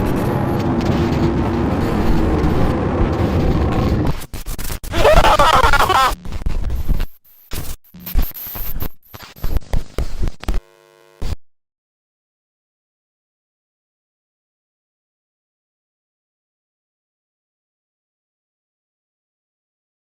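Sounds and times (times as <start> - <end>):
static rumble: 0.0 - 7.0.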